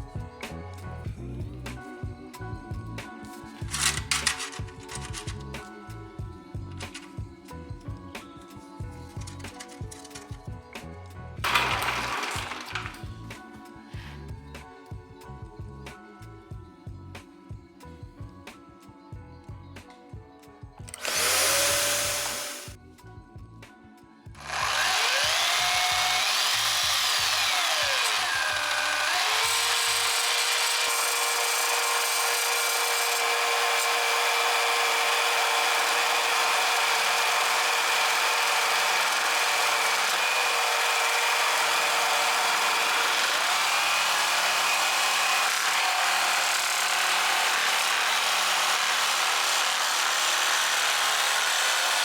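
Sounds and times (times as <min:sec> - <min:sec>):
jigsaw sawing wood: 0:03.5 - 0:05.8, 0:06.7 - 0:07.3, 0:09.1 - 0:10.4, 0:11.4 - 0:14.2, 0:20.9 - 0:22.8, 0:24.4 - 0:52.0.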